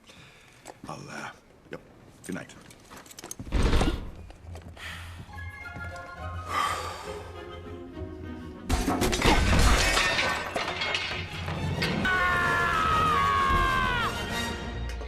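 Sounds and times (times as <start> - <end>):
film music: 4.2 - 15.0.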